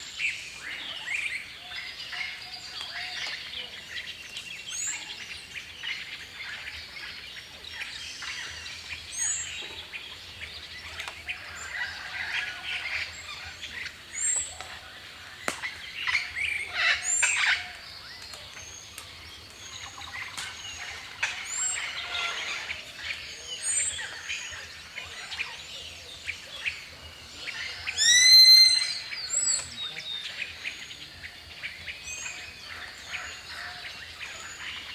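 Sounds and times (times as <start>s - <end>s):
birds chirping and calling: 0.6s - 34.9s
loud ringing bird call: 28.0s - 29.1s.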